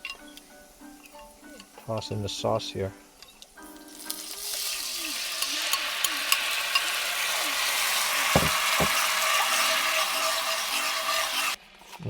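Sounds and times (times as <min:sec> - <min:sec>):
sauce sizzling in hot pan: 0:00.0 - 0:11.6
low knocks: 0:08.4 - 0:09.0.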